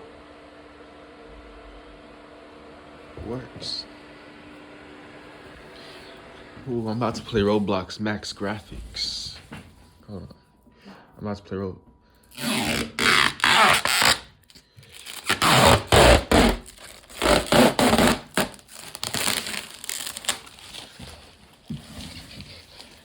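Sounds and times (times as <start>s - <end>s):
rustling and crinkling: 14.8s - 23.0s.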